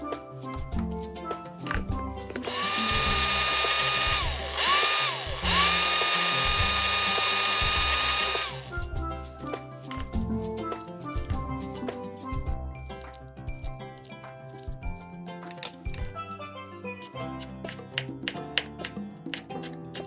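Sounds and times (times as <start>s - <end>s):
electric blender motor whining: 2.4s - 8.8s.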